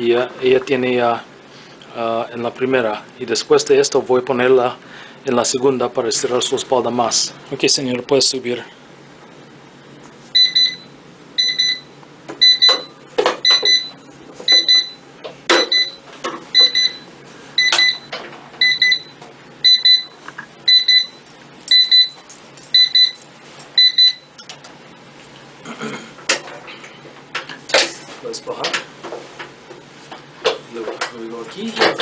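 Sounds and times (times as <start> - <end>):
electronic alarm double beeps: 10.4 - 23.2, 23.8 - 24.3.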